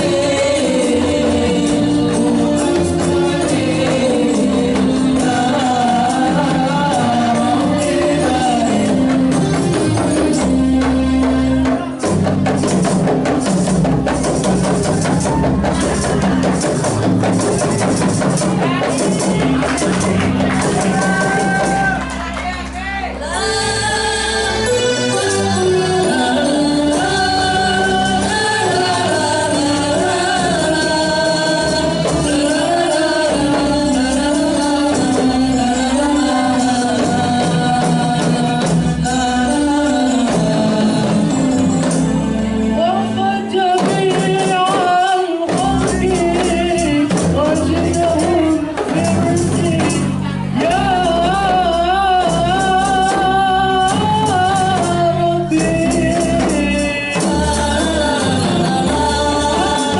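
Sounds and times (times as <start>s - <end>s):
frame drums: 0.0s - 59.9s
voices singing a melody: 0.0s - 59.9s
jingling tambourine: 23.5s - 43.2s.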